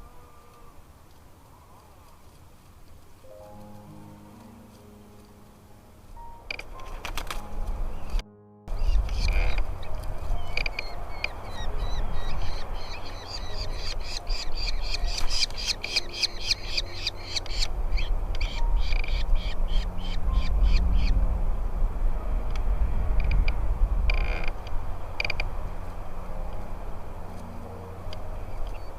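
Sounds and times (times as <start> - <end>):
low rumble: 3.2 - 28.9
chicks begging calls: 6.6 - 21.2.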